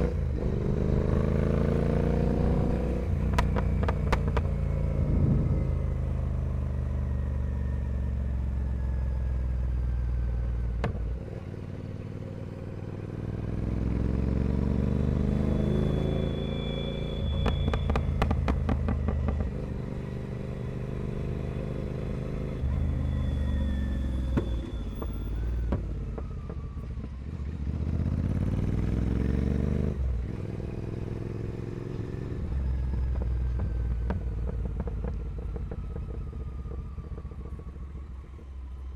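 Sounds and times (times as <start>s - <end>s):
motorcycle engine revving: 0.0s - 38.9s
exhaust cracks: 3.2s - 5.7s.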